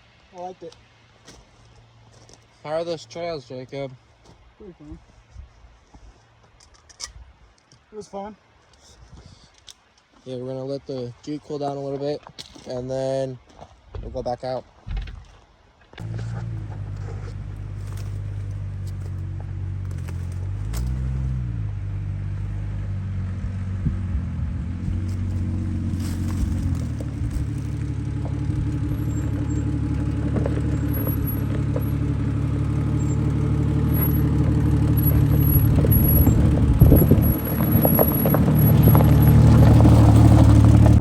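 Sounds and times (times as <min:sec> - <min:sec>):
jeep engine running: 0:16.0 - 0:41.0.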